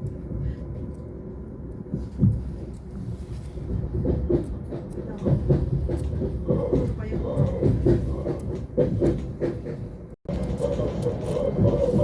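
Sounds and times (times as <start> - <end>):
train low rumble: 0.0 - 12.0
wheels clacking over rail joints: 3.6 - 12.0.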